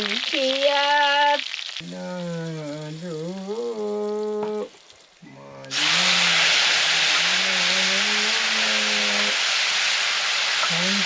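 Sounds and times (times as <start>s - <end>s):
hot pan sizzling: 0.0s - 11.0s
man singing: 1.8s - 4.7s, 5.7s - 9.3s.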